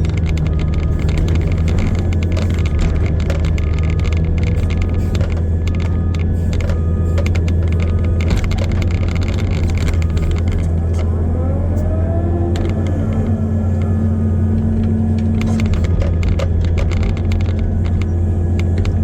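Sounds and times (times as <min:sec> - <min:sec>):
knocks and rattles: 0:00.0 - 0:11.0, 0:14.5 - 0:19.0
diesel engine running: 0:00.0 - 0:19.0
rising whine: 0:08.9 - 0:16.1.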